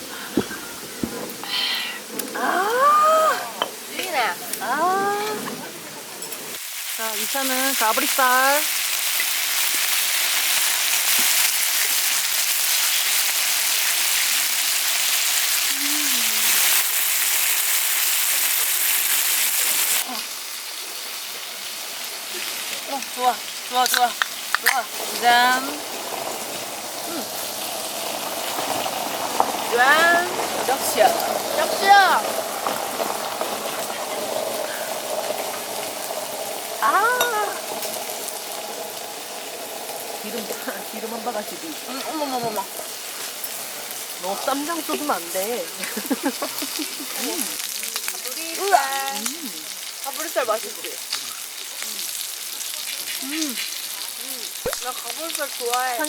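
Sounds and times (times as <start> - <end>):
meat sizzling on a grill: 0.0 - 56.0
person exclaiming: 2.4 - 5.4, 15.7 - 16.5, 53.2 - 53.6.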